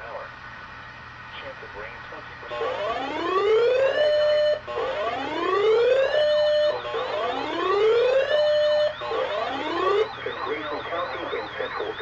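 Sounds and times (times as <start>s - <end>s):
electronic siren rising whoops: 2.5s - 12.0s
rapidly warbling high tone: 2.5s - 12.0s.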